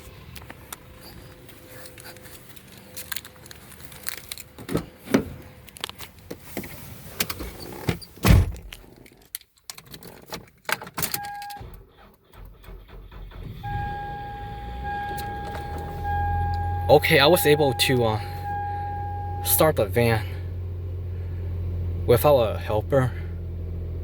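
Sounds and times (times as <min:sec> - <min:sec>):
car engine starting: 0:11.0 - 0:24.0
steady electronic tone: 0:13.6 - 0:19.8.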